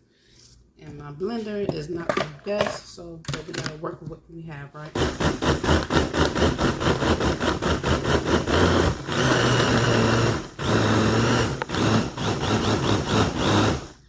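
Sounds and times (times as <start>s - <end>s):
blender running: 4.9s - 14.0s.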